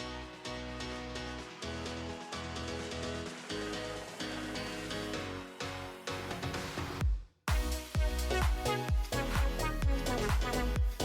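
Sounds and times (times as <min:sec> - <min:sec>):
fast drum beat: 0:07.0 - 0:11.0.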